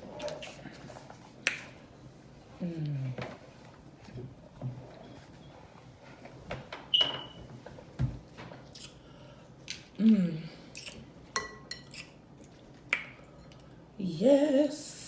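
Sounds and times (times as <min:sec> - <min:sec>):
wet mouth clicks and smacking: 0:12.9 - 0:13.7.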